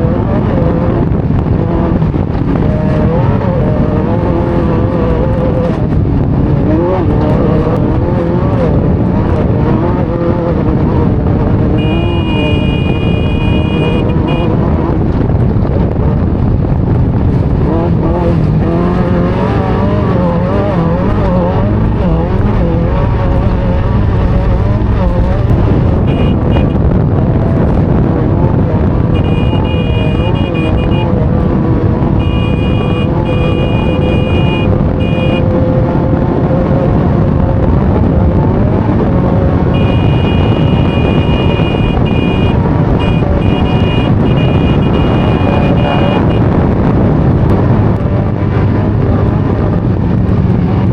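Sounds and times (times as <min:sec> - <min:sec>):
high steady tone: 0:11.8 - 0:14.5, 0:32.2 - 0:35.4, 0:39.7 - 0:46.4
vehicle engine revving under load: 0:17.7 - 0:27.3.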